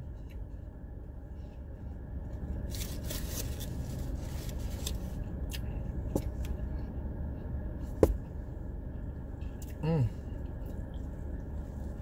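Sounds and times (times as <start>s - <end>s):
rustles and clicks of handling: 0.0s - 6.7s
car idling hum: 0.0s - 12.0s.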